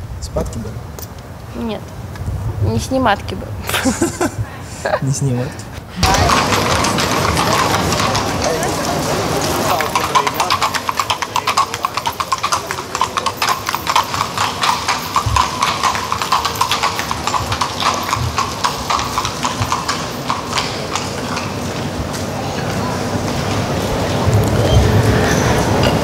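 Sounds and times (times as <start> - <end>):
horse hooves clip-clopping on pavement: 5.9 - 26.0.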